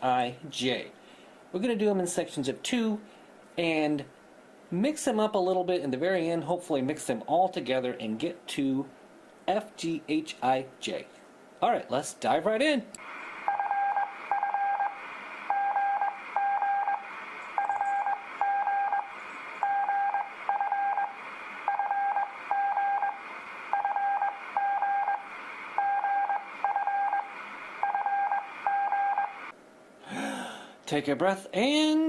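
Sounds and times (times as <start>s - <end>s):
faint steady hiss: 0.0s - 32.0s
morse code beeps: 13.4s - 29.4s.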